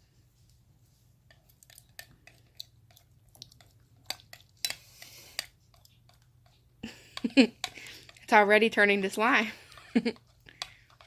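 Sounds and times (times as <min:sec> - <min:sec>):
wet slime squishing: 0:01.3 - 0:04.8.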